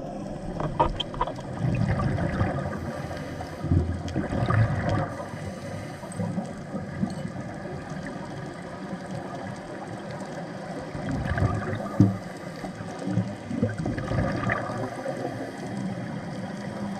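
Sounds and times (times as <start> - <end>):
muffled gurgling underwater water: 0.0 - 16.9.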